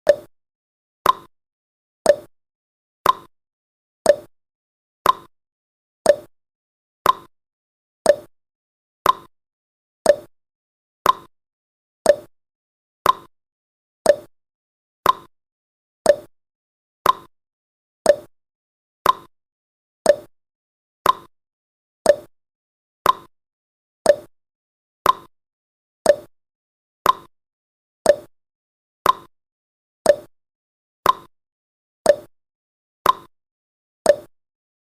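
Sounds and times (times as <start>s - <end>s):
timer ticking: 0.0s - 0.3s, 1.0s - 1.3s, 2.1s - 2.3s, 3.0s - 3.3s, 4.1s - 4.3s, 5.0s - 5.3s, 6.1s - 6.3s, 7.0s - 7.3s, 8.1s - 8.3s, 9.0s - 9.3s, 10.0s - 10.3s, 11.0s - 11.3s, 12.0s - 12.3s, 13.0s - 13.3s, 14.0s - 14.3s, 15.0s - 15.3s, 16.1s - 16.3s, 17.0s - 17.3s, 18.1s - 18.3s, 19.0s - 19.3s, 20.1s - 20.3s, 21.0s - 21.3s, 22.1s - 22.3s, 23.0s - 23.3s, 24.1s - 24.3s, 25.0s - 25.3s, 26.0s - 26.3s, 27.0s - 27.3s, 28.1s - 28.3s, 29.0s - 29.3s, 30.1s - 30.3s, 31.0s - 31.3s, 32.1s - 32.3s, 33.0s - 33.3s, 34.1s - 34.3s.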